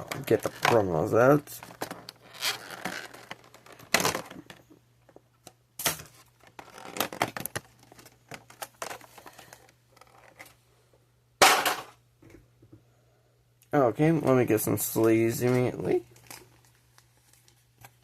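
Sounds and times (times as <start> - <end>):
plastic packaging crinkling: 6.1 - 10.5, 15.5 - 18.0.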